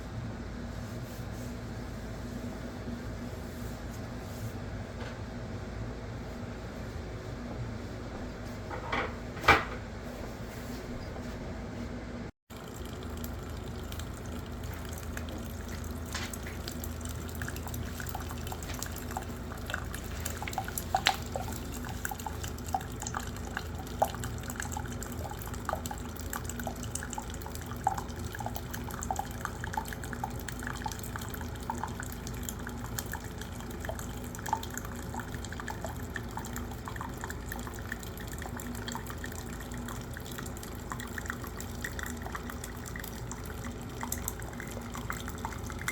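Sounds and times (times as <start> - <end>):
water drips and splashes: 12.5 - 45.9
water running: 12.5 - 45.9.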